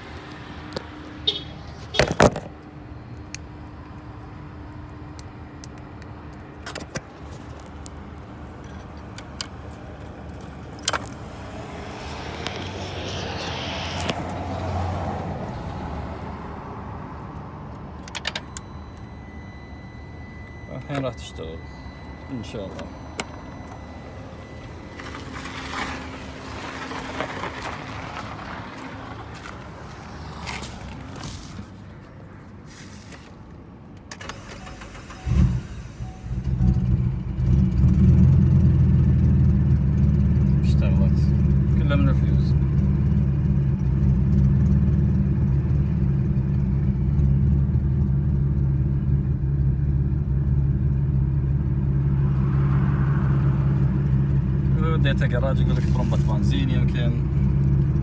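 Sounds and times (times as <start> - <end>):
car engine cranking and starting: 5.2 - 32.0, 34.0 - 58.0.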